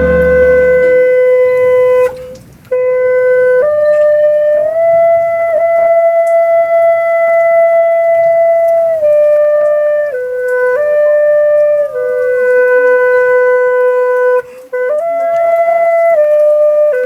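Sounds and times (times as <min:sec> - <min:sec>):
slow melody of held notes: 0:00.0 - 0:02.3.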